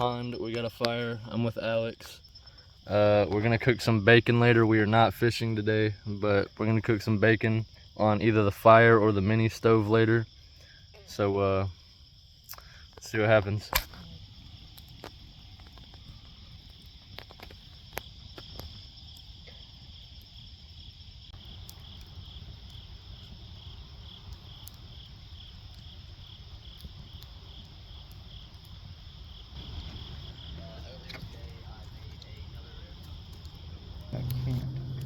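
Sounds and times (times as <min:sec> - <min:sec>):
insects chirping: 0:00.0 - 0:35.0
low background rumble: 0:28.7 - 0:35.0.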